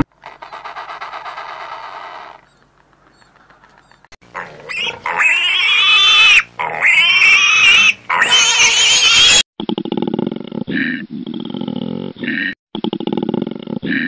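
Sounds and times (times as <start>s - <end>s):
pig squealing: 0.4s - 2.4s, 4.3s - 9.5s.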